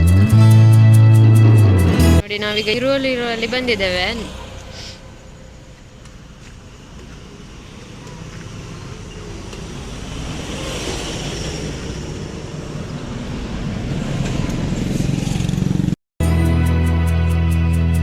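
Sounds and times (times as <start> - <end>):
background music: 0.0 - 2.2, 16.2 - 18.0
road vehicle noise: 0.0 - 18.0.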